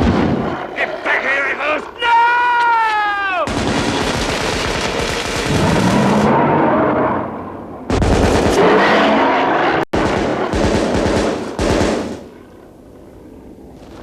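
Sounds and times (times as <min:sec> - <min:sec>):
rapid rifle gunfire: 0:03.5 - 0:06.3, 0:07.9 - 0:08.8, 0:10.0 - 0:12.3.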